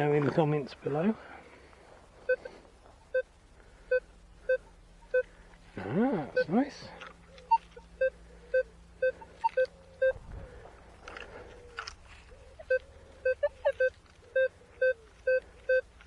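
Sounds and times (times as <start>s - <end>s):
metal detector beeping: 6.3s - 6.6s, 7.4s - 10.2s, 12.6s - 15.9s
rustling: 6.8s - 16.0s.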